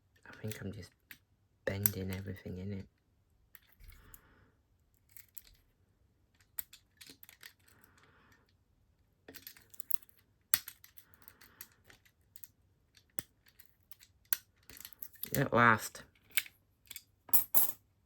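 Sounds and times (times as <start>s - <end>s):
lock pick clicking and scraping: 5.0s - 5.6s, 6.4s - 8.5s, 9.3s - 15.4s, 16.2s - 17.1s.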